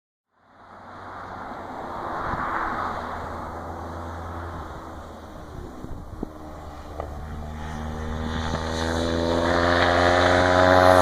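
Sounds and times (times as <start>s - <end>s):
wind rushing over microphone: 1.6s - 11.0s
motorcycle engine drone: 2.4s - 11.0s.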